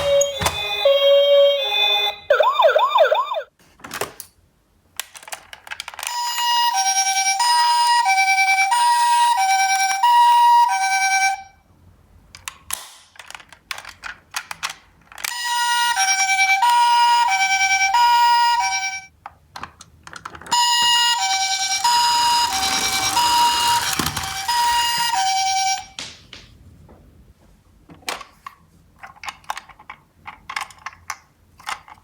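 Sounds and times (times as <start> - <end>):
two-tone ambulance siren: 0.0 - 3.5, 15.6 - 19.1, 20.5 - 25.9.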